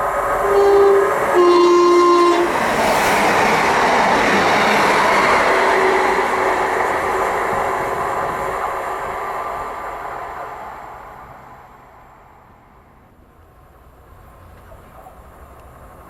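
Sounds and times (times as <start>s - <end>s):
two-tone train horn: 0.0s - 2.6s, 5.4s - 6.7s
train passing: 0.0s - 16.0s.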